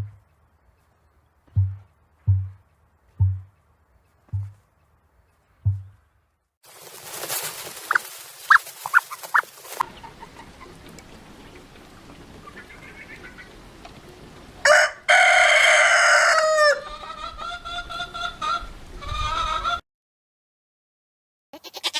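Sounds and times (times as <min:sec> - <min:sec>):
chickens clucking: 0:07.0 - 0:14.0, 0:16.2 - 0:19.8
rooster crowing: 0:14.6 - 0:19.8.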